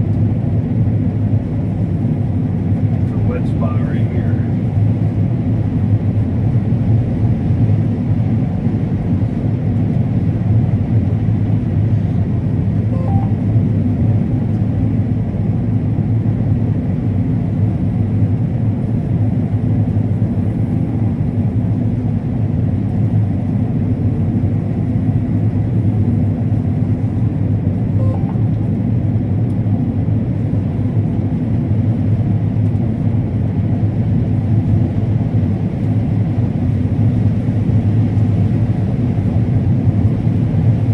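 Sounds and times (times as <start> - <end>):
combine harvester rumbling: 0.2 - 6.4, 11.6 - 14.7, 18.5 - 40.9.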